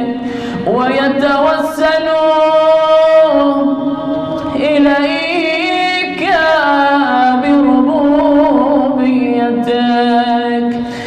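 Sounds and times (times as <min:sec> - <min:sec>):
man chanting melodically: 0:00.0 - 0:10.6.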